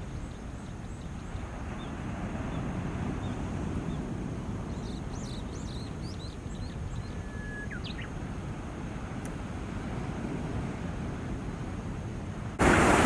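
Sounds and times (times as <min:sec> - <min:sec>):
warbler whistling song: 0:04.7 - 0:08.2
small waves washing on shore: 0:08.2 - 0:13.0.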